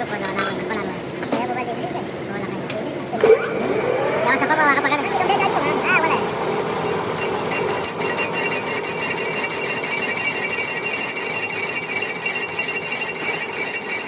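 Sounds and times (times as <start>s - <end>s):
metal lathe cutting: 3.0s - 14.0s.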